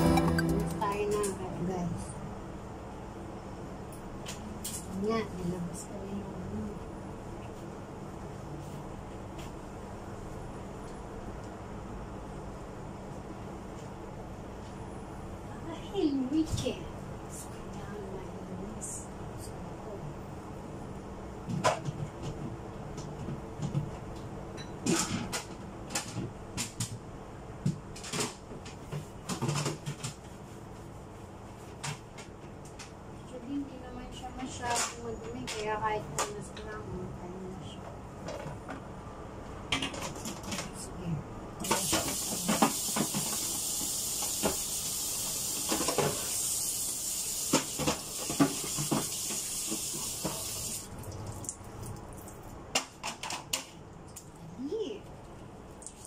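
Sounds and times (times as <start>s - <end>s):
tap water running into sink: 41.6s - 51.2s.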